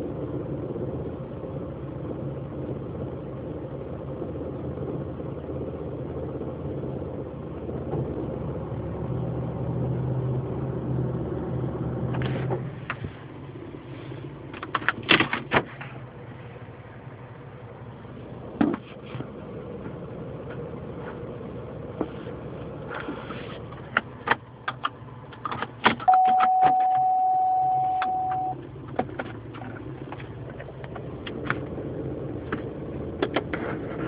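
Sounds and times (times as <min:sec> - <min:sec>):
car engine idling: 0:10.4 - 0:34.0
steady tone: 0:26.1 - 0:28.6.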